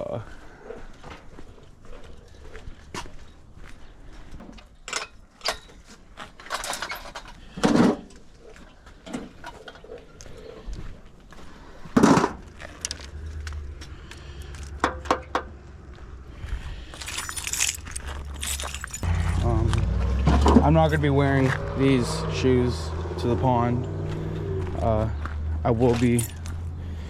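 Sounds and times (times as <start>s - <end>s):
fishing gear clicking and rattling: 12.4s - 13.7s, 16.9s - 19.6s, 25.9s - 26.7s.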